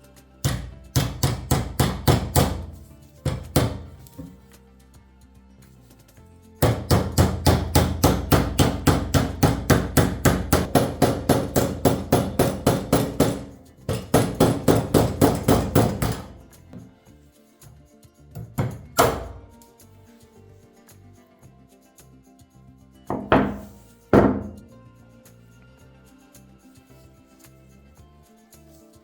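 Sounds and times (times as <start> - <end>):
hammer striking: 0.5 - 4.4, 6.6 - 16.9, 18.4 - 19.5, 23.1 - 24.7.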